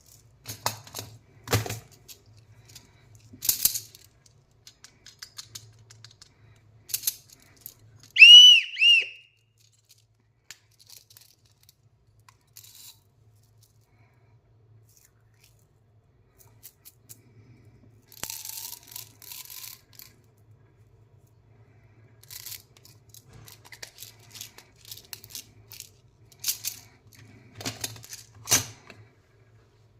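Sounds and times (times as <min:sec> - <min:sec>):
high whistle-like toots: 0:08.2 - 0:09.4.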